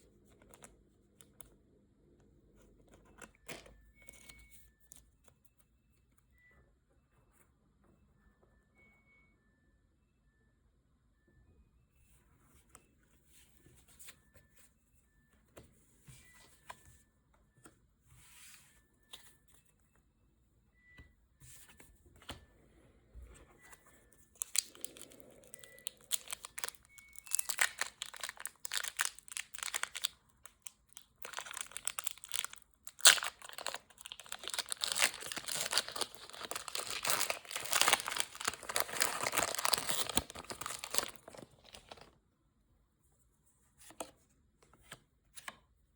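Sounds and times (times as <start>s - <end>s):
plastic packaging being torn: 24.4s - 42.1s.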